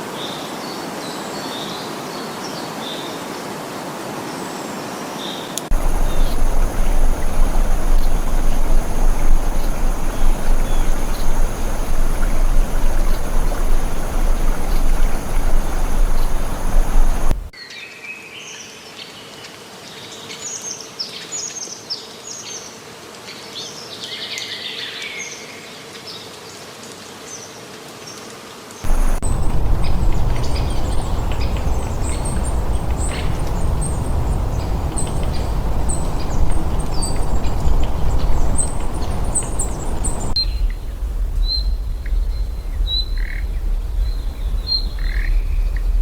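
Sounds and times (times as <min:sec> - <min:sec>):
birds chirping: 0:05.7 - 0:17.5, 0:28.9 - 0:40.4
faint high steady tones: 0:05.7 - 0:17.5, 0:28.9 - 0:40.4
loud steady rushing noise: 0:05.7 - 0:17.5, 0:28.9 - 0:41.4.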